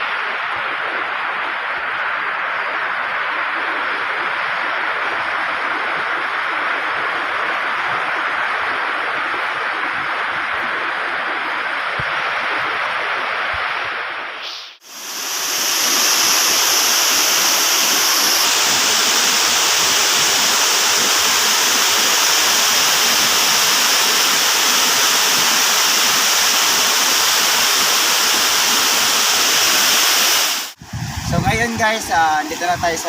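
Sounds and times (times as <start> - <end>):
rushing river water: 0.0 - 33.0.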